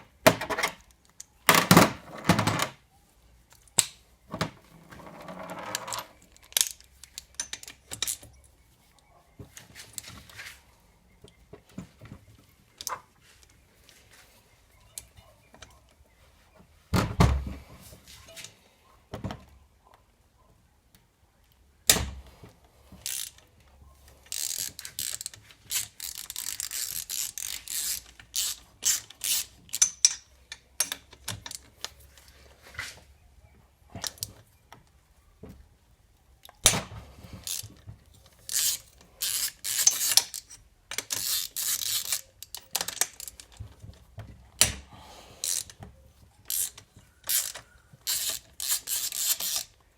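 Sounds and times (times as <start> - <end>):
ratchet wrench clicking: 23.0 - 23.4, 24.3 - 31.6, 37.4 - 37.7, 38.4 - 43.6, 45.4 - 45.8, 46.5 - 49.8
metal parts knocking: 24.4 - 31.6, 38.5 - 43.6.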